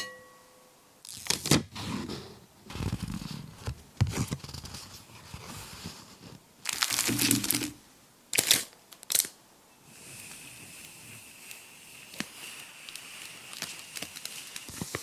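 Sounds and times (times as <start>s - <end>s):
packaging crinkling and tearing: 1.0s - 1.6s, 6.6s - 9.4s, 11.5s - 15.0s.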